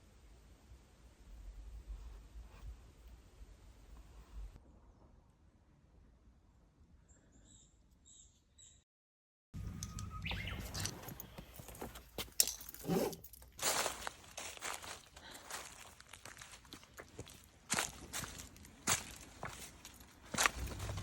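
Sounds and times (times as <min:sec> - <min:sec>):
faint high bird chirps: 0:07.0 - 0:08.8, 0:09.6 - 0:11.6
rustling with crunching and clicks: 0:09.8 - 0:21.0
footsteps: 0:10.4 - 0:21.0.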